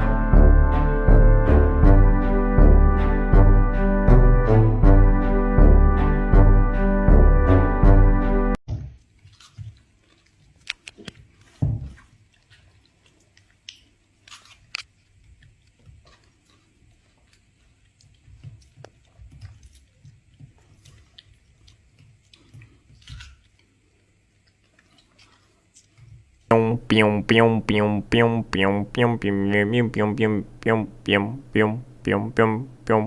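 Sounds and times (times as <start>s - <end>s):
music: 0.0s - 8.6s.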